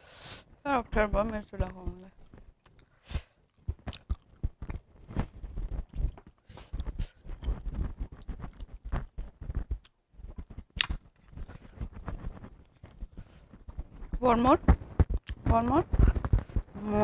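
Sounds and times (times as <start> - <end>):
chewing and mouth smacking: 2.2 - 14.2, 15.0 - 15.4.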